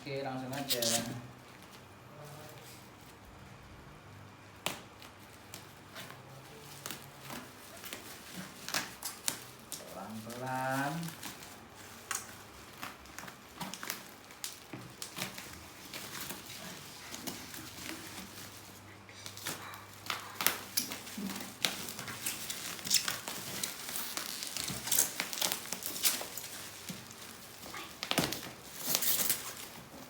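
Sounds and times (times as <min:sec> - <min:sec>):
packaging crinkling: 0:00.3 - 0:02.0, 0:04.6 - 0:30.0.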